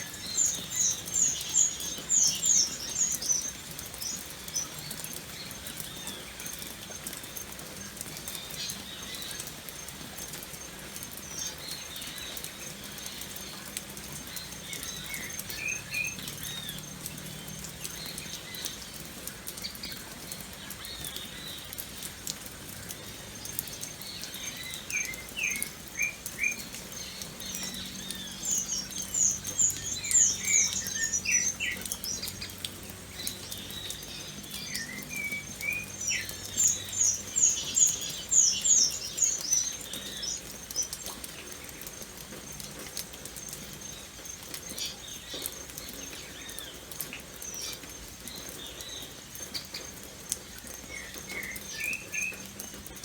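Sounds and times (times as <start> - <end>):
birds chirping: 0.0 - 53.0
light rain pattering: 0.0 - 53.0.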